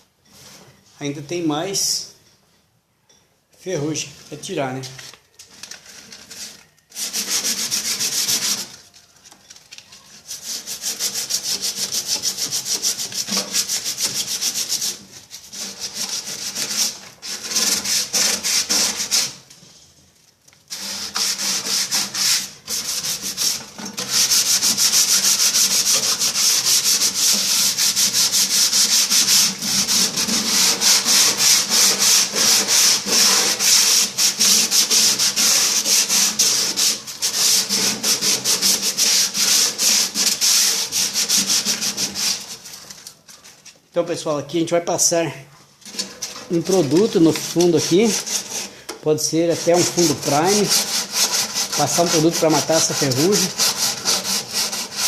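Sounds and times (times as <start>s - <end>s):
sandpaper scraping metal: 5.9s - 8.9s, 10.0s - 19.4s, 20.7s - 42.9s, 45.8s - 55.0s.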